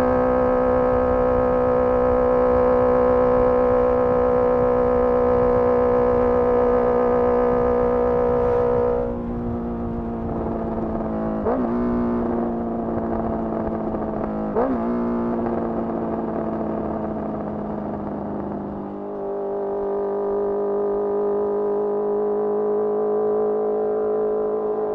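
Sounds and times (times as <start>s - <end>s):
low wind rumble: 0.0s - 19.7s
motorcycle engine revving: 0.0s - 24.9s.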